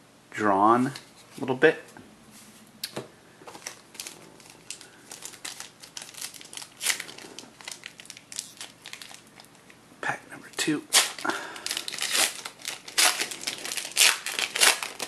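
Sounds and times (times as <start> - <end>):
wrapper tearing and crinkling: 3.5 - 9.5, 10.9 - 15.0.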